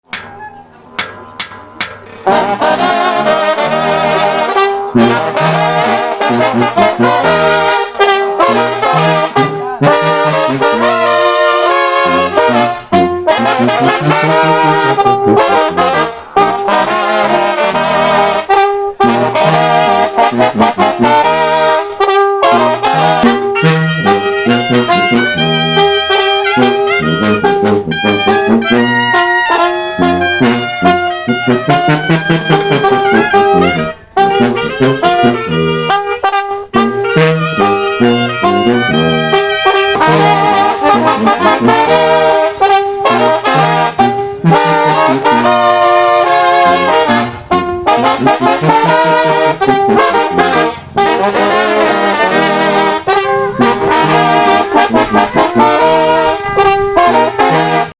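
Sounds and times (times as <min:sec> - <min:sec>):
drums: 0:00.0 - 0:03.9
brass band playing: 0:00.0 - 0:57.9
trombones with wavering vibrato: 0:00.0 - 0:57.9.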